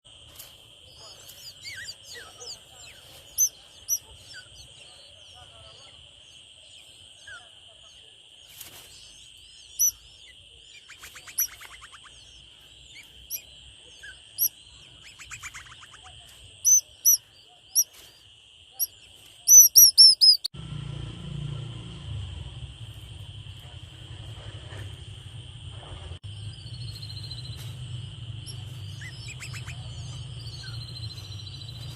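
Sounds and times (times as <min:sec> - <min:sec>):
nestling birds chirping: 0:00.1 - 0:20.5, 0:23.0 - 0:31.9
raspy buzzing bird calls: 0:09.6 - 0:18.0, 0:18.8 - 0:20.5, 0:28.3 - 0:31.9
low rumble: 0:20.6 - 0:31.9.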